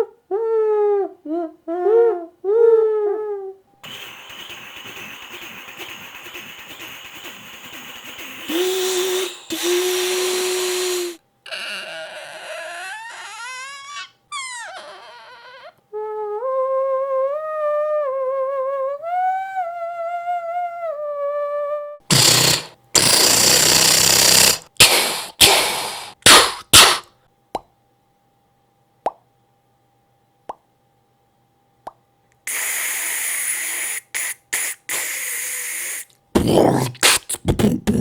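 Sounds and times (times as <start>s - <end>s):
voice imitating flute melody: 0.0s - 3.6s, 8.4s - 22.0s, 33.1s - 38.0s
person imitating train hiss and whistle: 3.8s - 14.0s, 22.1s - 27.1s, 32.5s - 38.0s
voice imitating machine-gun burst: 4.2s - 13.1s, 22.1s - 27.0s, 32.5s - 38.0s
voice imitating pistol shots: 8.2s - 11.2s, 22.1s - 27.1s, 33.6s - 38.0s
voice imitating creaking door: 8.5s - 15.8s, 34.9s - 38.0s.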